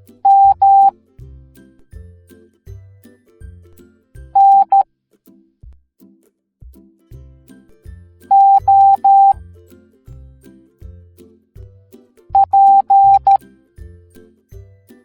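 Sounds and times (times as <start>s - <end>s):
light children's music: 0.0s - 15.0s
morse code beeps: 0.3s - 0.9s, 4.4s - 4.8s, 8.3s - 9.3s, 12.4s - 13.4s.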